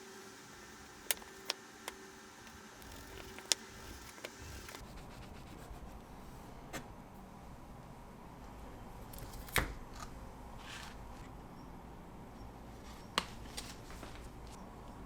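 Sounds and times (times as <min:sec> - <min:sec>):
faint steady hum: 0:00.0 - 0:09.3.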